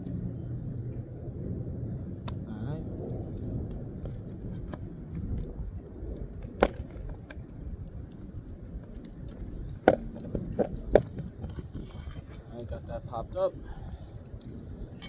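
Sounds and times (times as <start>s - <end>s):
low background rumble: 0.0s - 15.0s.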